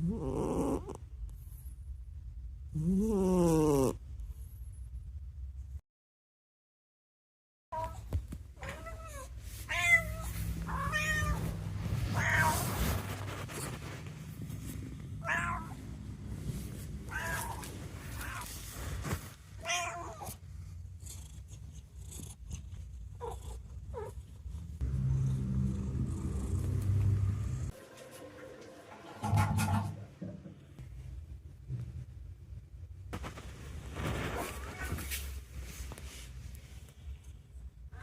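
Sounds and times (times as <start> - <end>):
steady low rumble: 4.0 - 5.8, 9.3 - 19.6, 20.4 - 27.8, 30.2 - 38.0
cat meowing: 8.6 - 11.5, 15.2 - 15.8, 17.1 - 18.5, 19.6 - 20.4.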